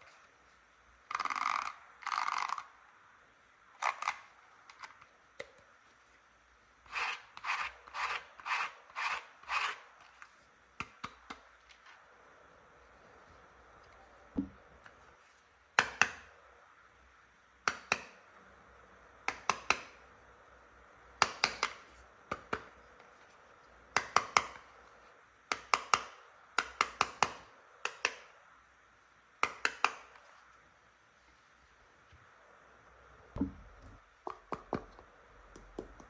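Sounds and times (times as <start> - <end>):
plastic toy pieces clicking: 1.1 - 2.8.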